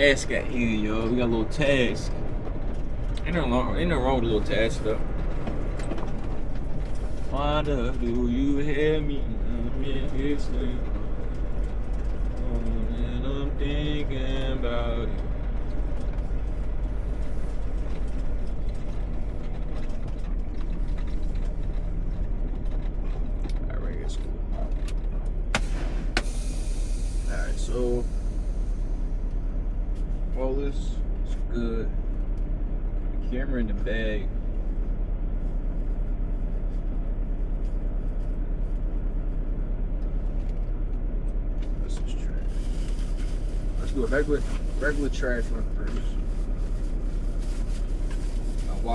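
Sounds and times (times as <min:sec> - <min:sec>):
diesel engine idling: 0:00.0 - 0:48.9.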